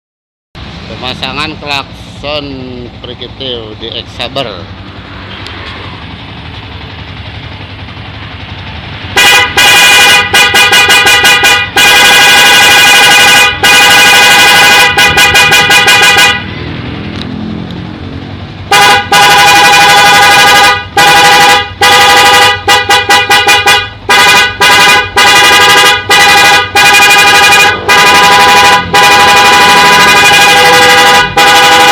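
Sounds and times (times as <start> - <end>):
electric novelty horn blasts: 9.1 - 16.5, 18.7 - 31.9.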